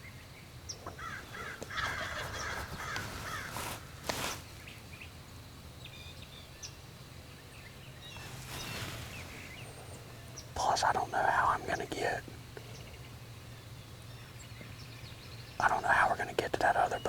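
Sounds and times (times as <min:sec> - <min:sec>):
small birds chirping: 0:00.0 - 0:17.0
crows cawing: 0:00.8 - 0:04.0.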